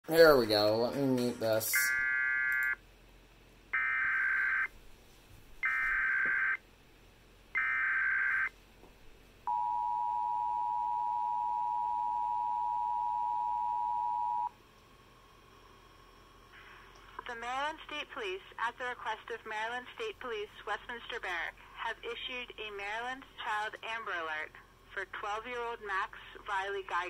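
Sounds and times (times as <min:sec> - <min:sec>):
screeching data tone bursts: 0:01.7 - 0:02.8.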